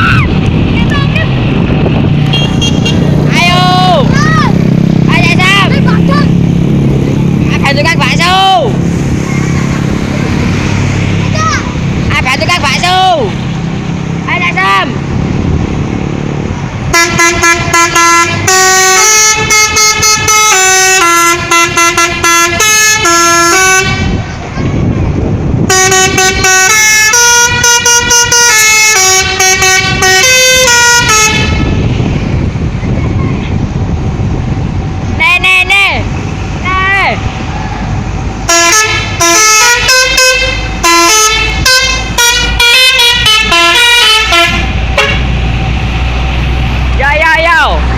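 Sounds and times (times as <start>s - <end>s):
low rumble: 0.0s - 17.0s, 31.4s - 35.3s
musical air horn playing a tune: 2.3s - 3.0s, 16.9s - 24.3s, 25.7s - 31.8s, 38.5s - 45.4s.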